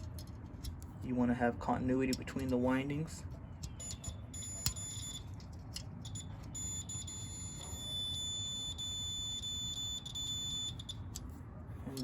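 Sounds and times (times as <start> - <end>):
multimeter continuity beep: 3.7 - 5.3, 6.0 - 11.1.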